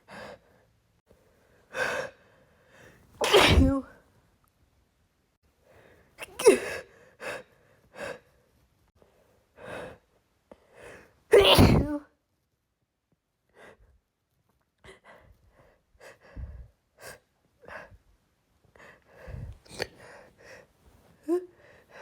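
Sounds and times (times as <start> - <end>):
woman sneezing: 3.2 - 3.9, 6.2 - 6.8, 11.3 - 12.1
short quiet breaths: 14.9 - 16.8, 18.8 - 22.0.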